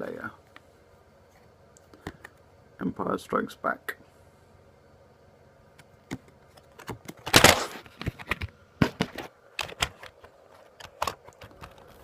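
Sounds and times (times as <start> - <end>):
card packet rustling: 6.6 - 12.0.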